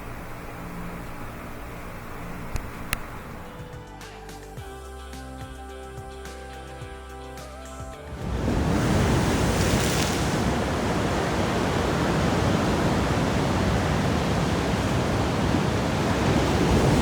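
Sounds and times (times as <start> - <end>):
steady rushing noise: 0.0 - 3.8, 8.1 - 17.0.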